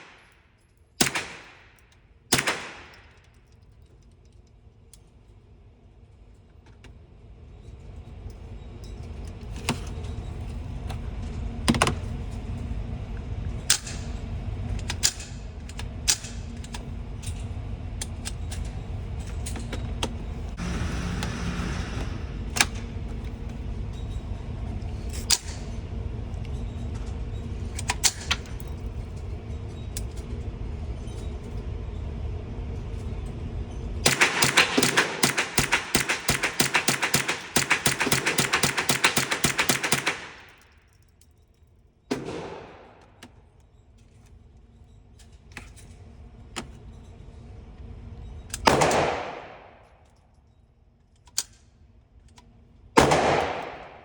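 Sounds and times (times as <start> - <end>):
low steady rumble: 0.0 - 54.0
suppressed gunshots: 1.0 - 3.1, 34.0 - 40.5, 42.1 - 43.2, 48.7 - 49.8, 53.0 - 54.0.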